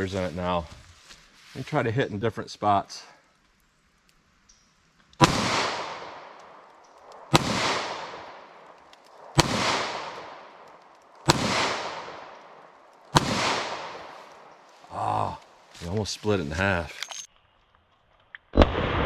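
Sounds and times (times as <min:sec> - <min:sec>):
revolver gunshots: 0:05.2 - 0:14.6
long rolling echo: 0:05.2 - 0:15.7.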